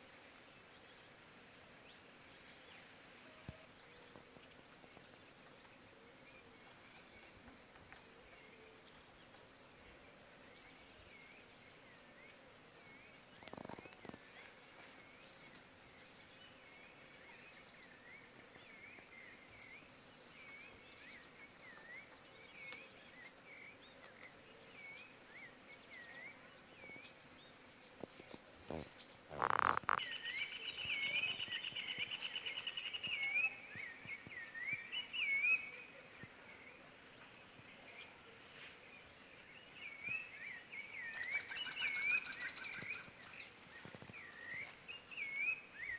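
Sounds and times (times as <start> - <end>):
high-pitched insect drone: 28.1 - 35.9.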